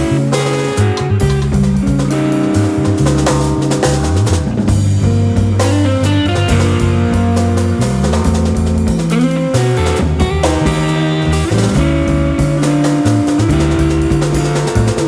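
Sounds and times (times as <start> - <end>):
drum kit: 0.0 - 15.0
electric bass low notes: 0.0 - 15.0
guitar lines: 0.0 - 15.0.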